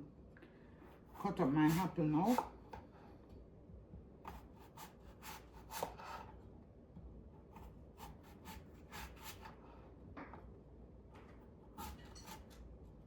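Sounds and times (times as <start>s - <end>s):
knife cutting apple on board: 0.9s - 3.0s, 4.2s - 6.4s, 7.0s - 9.7s, 11.2s - 12.7s.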